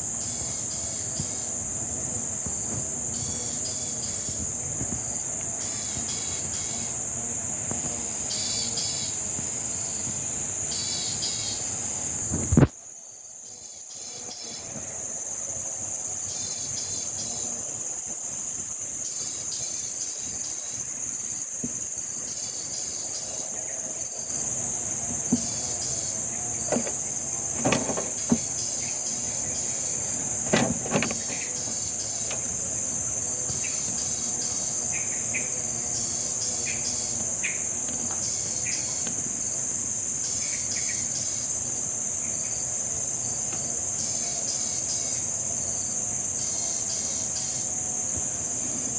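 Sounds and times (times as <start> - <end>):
crickets chirping: 0.0 - 48.9
sharp knocks and rattles: 25.0 - 32.8.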